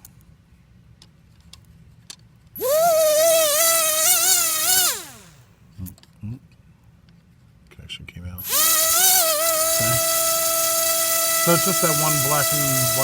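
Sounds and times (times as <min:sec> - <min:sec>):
drone motor whine: 0:02.6 - 0:05.5, 0:08.4 - 0:13.0.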